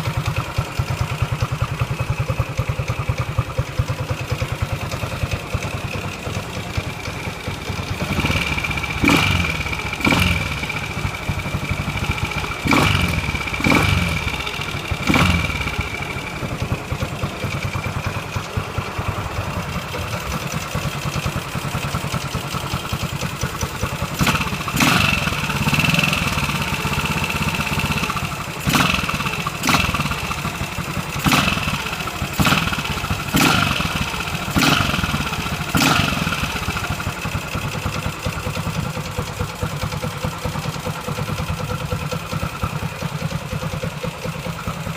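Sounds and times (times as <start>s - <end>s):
motorcycle engine idling: 0.0s - 44.9s
engine throttle blips: 7.6s - 20.5s.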